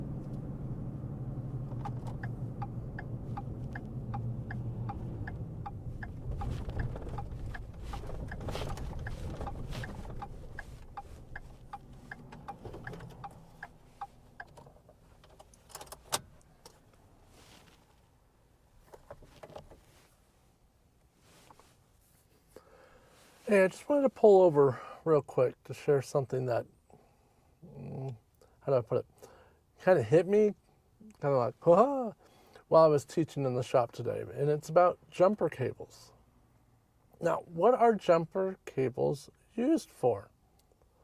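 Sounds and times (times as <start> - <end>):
low hum of car slowing: 0.0 - 15.1
turn signal ticking: 0.0 - 16.5.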